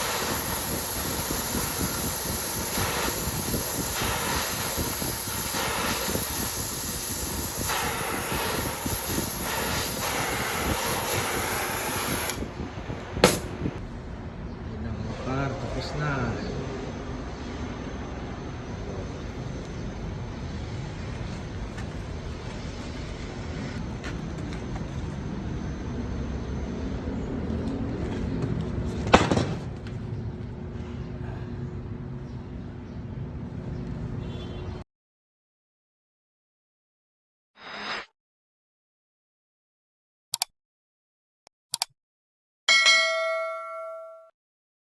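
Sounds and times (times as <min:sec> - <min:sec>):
arc welding crackling: 0:00.0 - 0:12.5
steady low rumble: 0:12.4 - 0:14.8
sharp ringing knock: 0:42.7 - 0:44.3.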